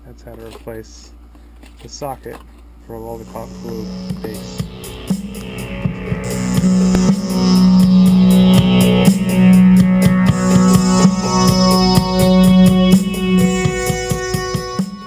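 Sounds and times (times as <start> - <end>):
guitar and keyboard music: 3.2 - 15.0
steady drum beat: 3.2 - 15.0
sustained low note: 3.2 - 15.0.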